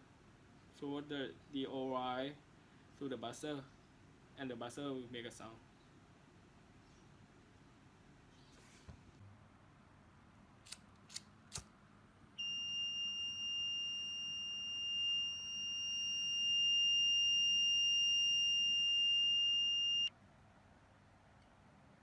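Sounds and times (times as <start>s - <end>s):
high-pitched alarm buzzer tone: 12.4s - 20.1s.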